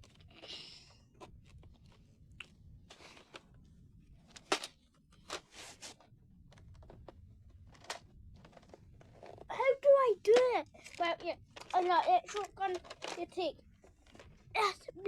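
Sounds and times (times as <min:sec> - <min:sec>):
plastic packaging clicks: 0:10.3 - 0:13.4
packaging crinkling: 0:10.3 - 0:14.5.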